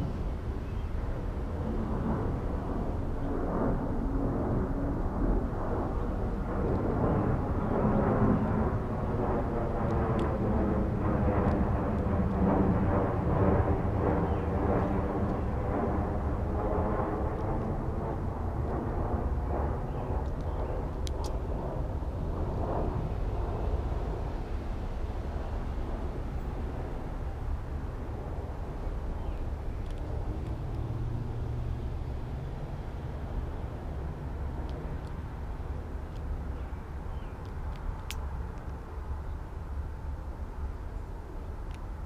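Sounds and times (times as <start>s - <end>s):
engine drone passing: 21.5s - 36.6s.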